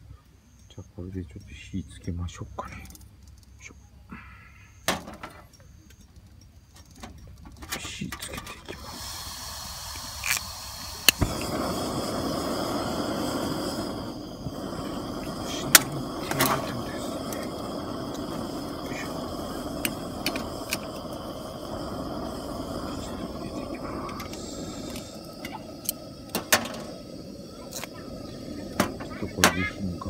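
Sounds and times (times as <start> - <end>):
burner flame rushing: 8.7 - 30.0
stove igniter click: 9.9 - 11.8, 24.1 - 27.0.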